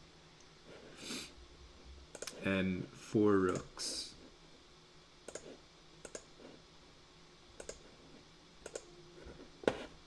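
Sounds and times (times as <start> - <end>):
computer mouse clicking: 2.1 - 2.4, 5.2 - 6.3, 7.6 - 7.9, 8.6 - 8.9.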